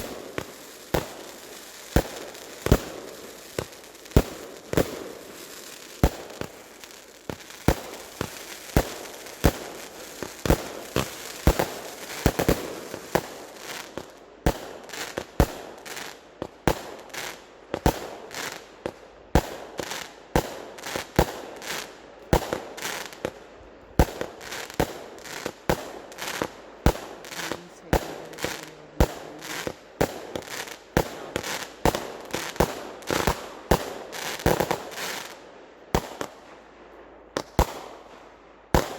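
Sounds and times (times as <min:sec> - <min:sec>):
fireworks bangs: 0:00.0 - 0:15.8, 0:24.0 - 0:35.3
fireworks crackling: 0:00.0 - 0:36.7.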